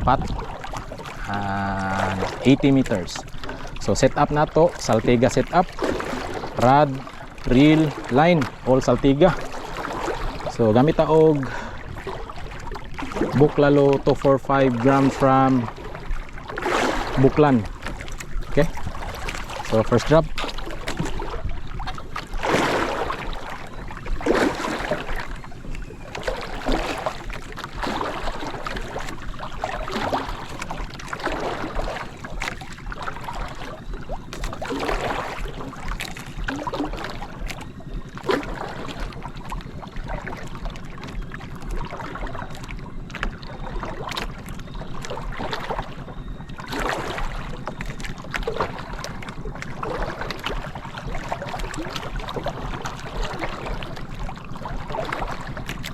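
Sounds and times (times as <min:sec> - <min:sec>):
wind on microphone: 0:00.0 - 0:37.7
steady low hum: 0:00.0 - 0:55.9
water splashing against boat hull: 0:00.0 - 0:55.9.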